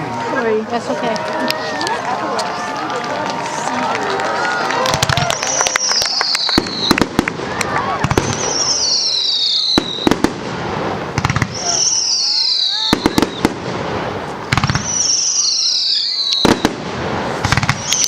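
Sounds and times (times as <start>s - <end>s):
fireworks bangs and crackles: 0.0s - 18.0s
descending firework whistle: 4.4s - 10.4s, 11.3s - 13.7s, 14.6s - 18.0s.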